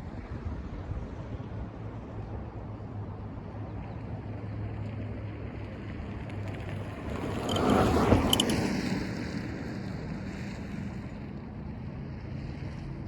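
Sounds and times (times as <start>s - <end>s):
car road and tyre noise: 4.3s - 12.8s.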